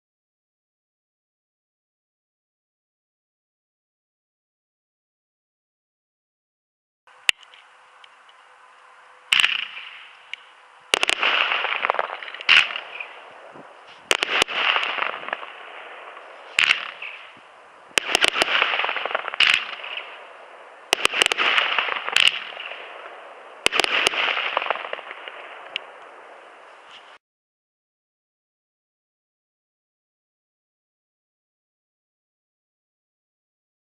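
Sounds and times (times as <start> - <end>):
crackling hiss: 7.1 - 27.2
firework hissing: 9.3 - 25.7
firework shots: 9.3 - 27.1.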